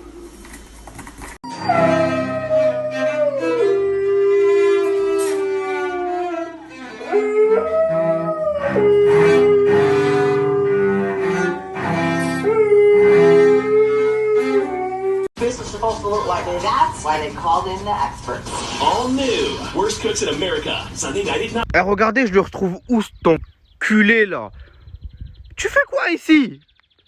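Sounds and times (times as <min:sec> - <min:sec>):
music: 0:01.5 - 0:08.2, 0:09.7 - 0:12.4
dog howling: 0:01.5 - 0:15.3.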